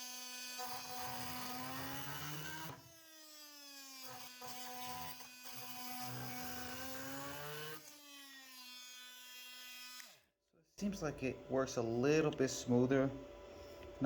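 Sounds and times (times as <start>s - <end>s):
multi-tool sawing wood: 0.0s - 10.2s.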